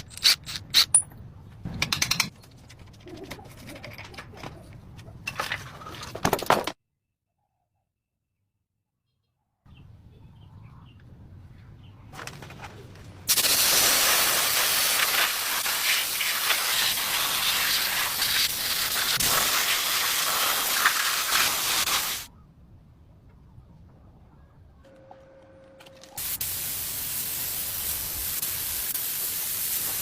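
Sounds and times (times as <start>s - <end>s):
hiss of air jet: 13.3s - 22.3s, 26.2s - 30.0s.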